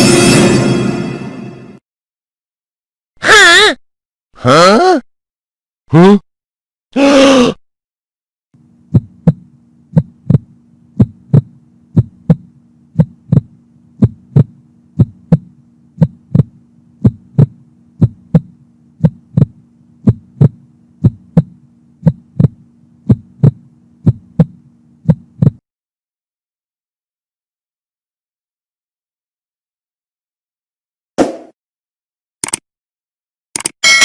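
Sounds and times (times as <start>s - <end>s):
steady low hum: 8.6s - 25.6s
heartbeat thumps: 8.8s - 25.6s.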